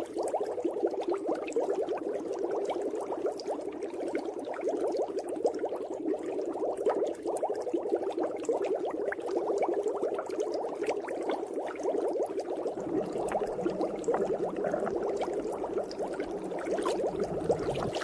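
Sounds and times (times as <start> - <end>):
underwater bubbling: 0.0 - 18.0
low rumble: 12.8 - 18.0.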